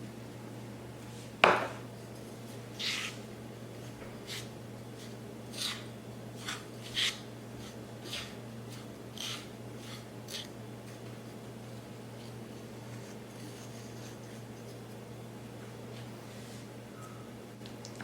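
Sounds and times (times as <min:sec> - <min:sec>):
steady low hum: 0:00.0 - 0:18.0
food preparation scraping strokes: 0:02.3 - 0:15.0, 0:15.9 - 0:16.8.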